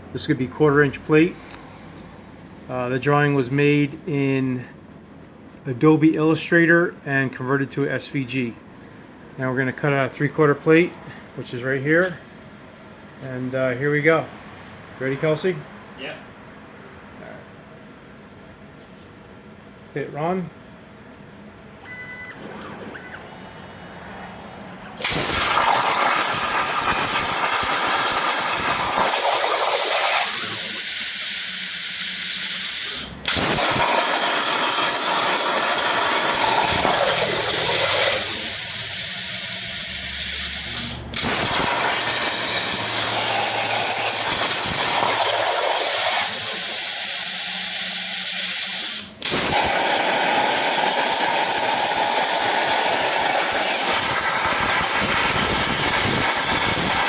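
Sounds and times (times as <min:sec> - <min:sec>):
plasma torch hissing: 0:25.0 - 0:57.0.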